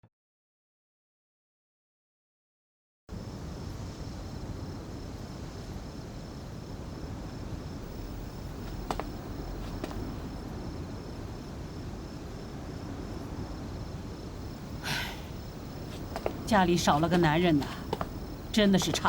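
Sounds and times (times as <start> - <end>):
crickets chirping: 3.1 - 19.0
low background hiss: 3.1 - 19.0.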